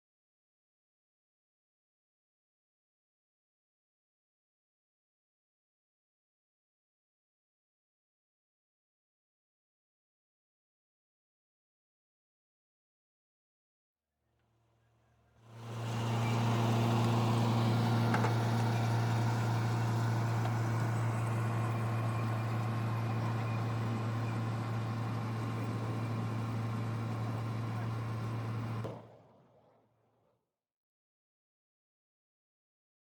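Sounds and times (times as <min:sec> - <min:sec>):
tractor engine running: 0:15.5 - 0:29.2.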